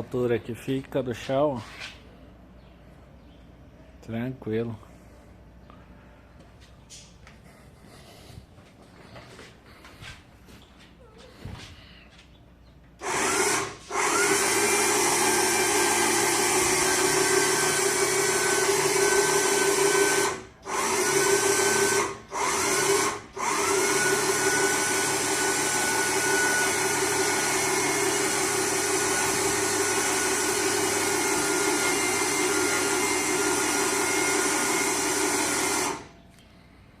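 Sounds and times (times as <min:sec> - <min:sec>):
electric motor whining: 0:13.0 - 0:36.1.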